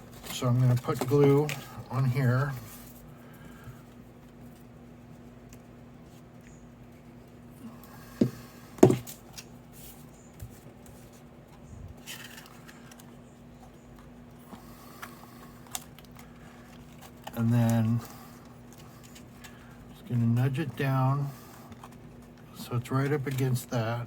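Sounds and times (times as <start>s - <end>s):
steady low hum: 0.0s - 24.0s
sharp knocks: 8.2s - 9.0s
paper handling: 8.8s - 19.9s, 20.6s - 23.8s.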